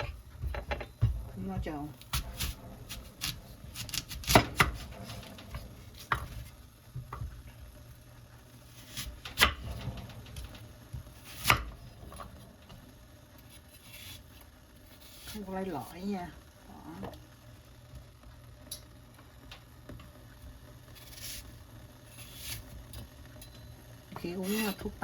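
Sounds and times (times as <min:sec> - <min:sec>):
knife chops: 0:02.1 - 0:05.2, 0:11.3 - 0:11.7.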